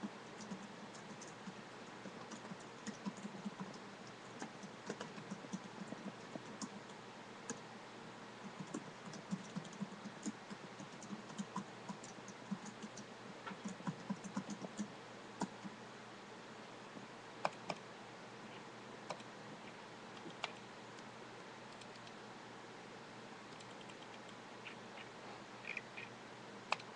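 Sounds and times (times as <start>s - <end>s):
computer keyboard typing: 0.3s - 7.6s, 8.4s - 15.7s, 17.4s - 17.8s, 21.7s - 22.2s, 23.5s - 24.4s.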